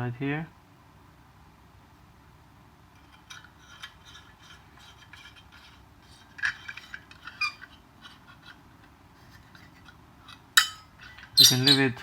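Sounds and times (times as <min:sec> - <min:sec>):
light metallic clicks and clinks: 0:10.3 - 0:11.9.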